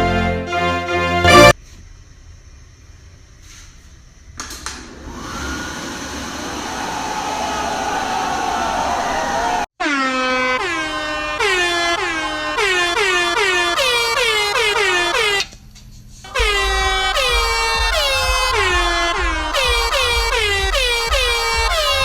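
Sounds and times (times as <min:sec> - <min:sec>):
air horn meme music: 0:00.0 - 0:01.6, 0:09.8 - 0:15.6, 0:16.2 - 0:22.0
heavy bass: 0:01.0 - 0:01.6, 0:16.3 - 0:22.0.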